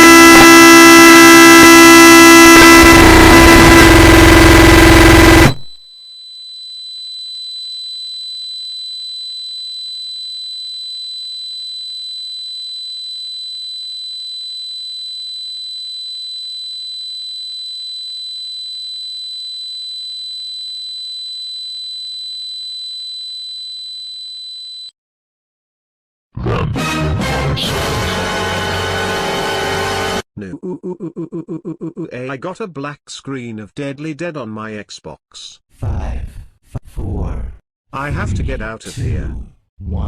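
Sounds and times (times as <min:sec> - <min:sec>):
loud blare: 0:00.0 - 0:05.7
high-pitched electronic beep tone: 0:00.0 - 0:05.9.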